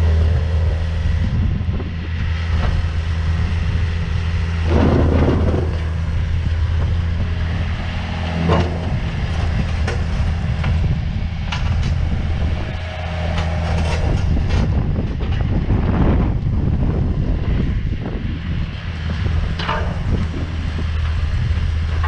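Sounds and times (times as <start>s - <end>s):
excavator diesel engine running: 0.0s - 22.0s
machine clanking: 4.6s - 6.1s.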